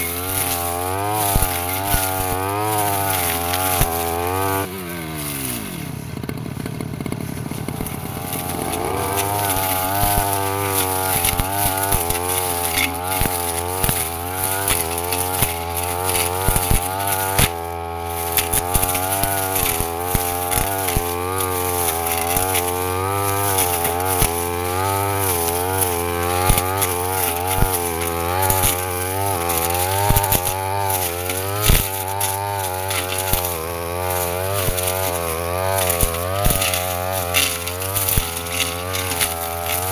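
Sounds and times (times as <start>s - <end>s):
brush cutter engine running: 0.0s - 39.9s.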